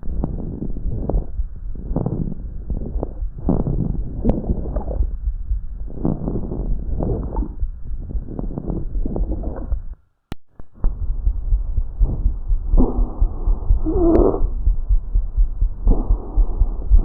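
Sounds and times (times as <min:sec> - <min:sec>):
breathing through stethoscope: 0:00.0 - 0:05.1, 0:05.9 - 0:09.8
crackling lung clicks: 0:00.0 - 0:17.0.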